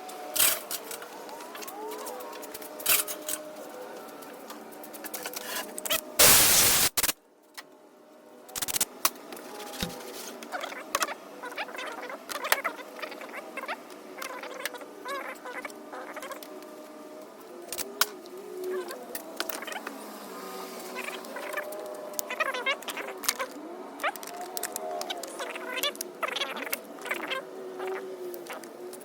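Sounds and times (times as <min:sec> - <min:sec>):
loud hiss: 0:06.2 - 0:07.1.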